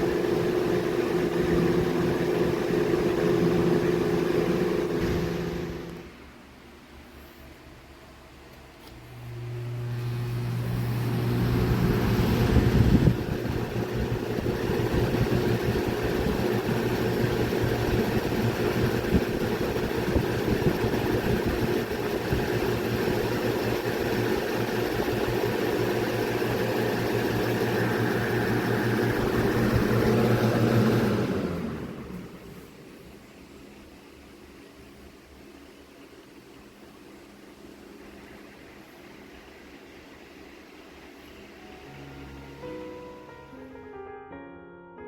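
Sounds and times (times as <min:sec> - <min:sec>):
electric fan running: 0:00.0 - 0:43.8.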